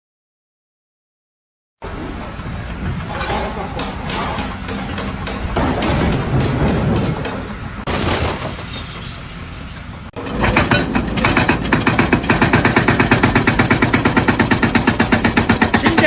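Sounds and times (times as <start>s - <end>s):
rough noisy burst: 7.9s - 9.4s.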